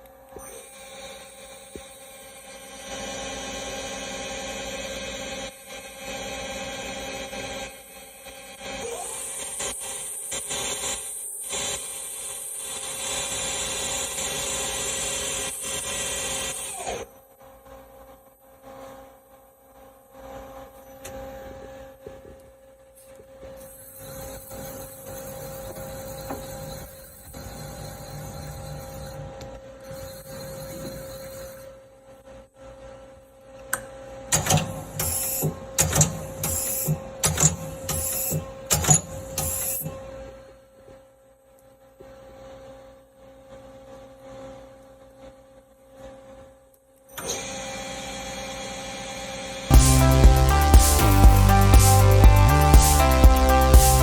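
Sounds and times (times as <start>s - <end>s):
lathe whining and whirring: 0.0s - 17.3s, 23.4s - 32.5s, 47.2s - 49.8s.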